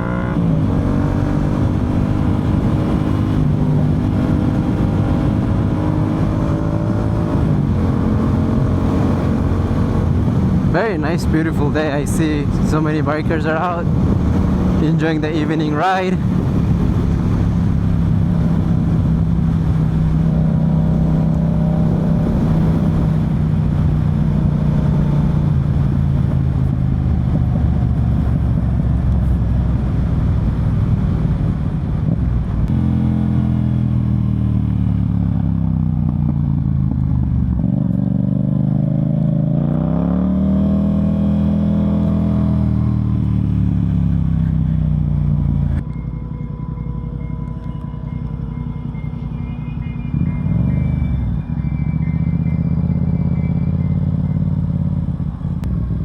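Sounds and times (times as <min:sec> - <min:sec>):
motorcycle engine while riding: 0:00.0 - 0:56.0.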